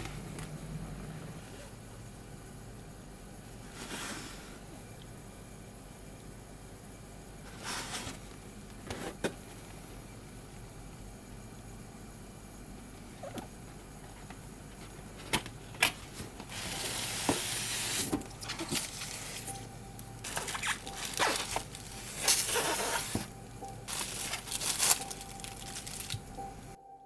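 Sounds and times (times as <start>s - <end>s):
packaging rustling and crinkling: 16.5s - 19.6s, 20.2s - 26.4s.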